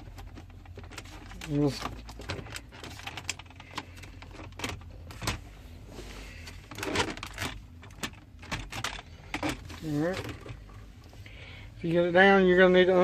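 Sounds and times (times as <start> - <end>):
clicks and knocks of dash trim: 6.6 - 9.7.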